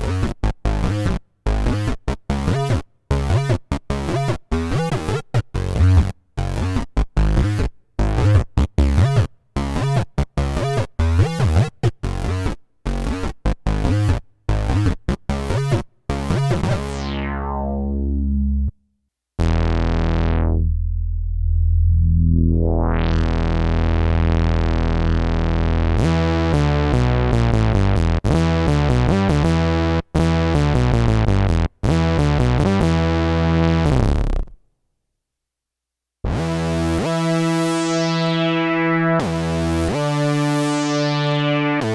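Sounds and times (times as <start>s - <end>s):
analog synth keyboard: 16.6s - 18.8s, 19.4s - 24.5s, 36.5s - 41.9s.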